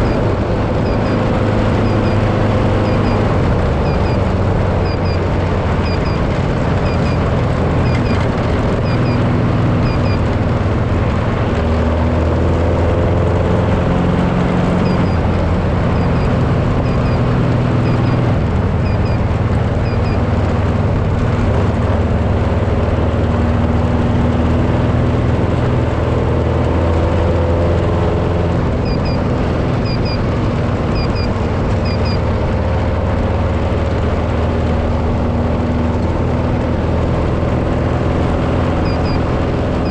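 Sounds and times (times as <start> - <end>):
vehicle engine running: 0.0 - 39.9
high double chirp: 5.8 - 7.2, 7.8 - 10.2.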